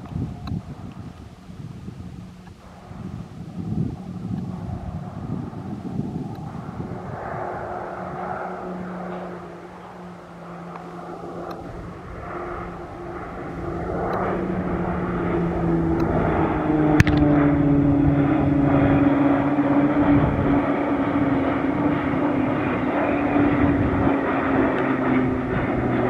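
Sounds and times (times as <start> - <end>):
propeller aircraft flying by: 0.0 - 26.0
sharp click: 17.0 - 17.3.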